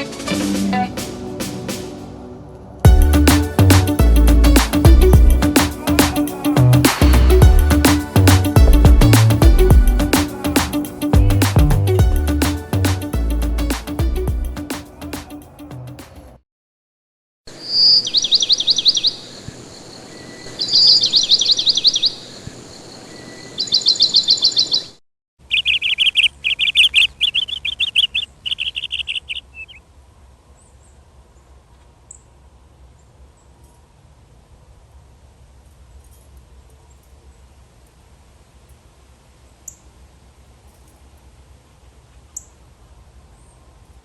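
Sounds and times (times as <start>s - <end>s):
bird chip notes: 0.0s - 15.8s
small birds trilling: 17.6s - 29.8s.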